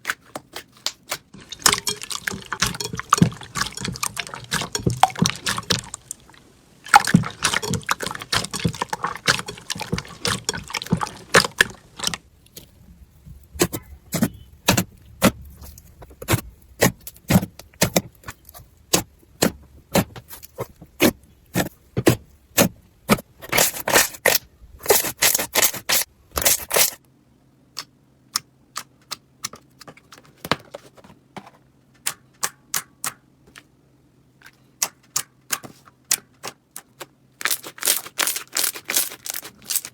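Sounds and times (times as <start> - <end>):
low steady hum: 1.4 - 23.5
slime crackling and popping: 37.4 - 39.9.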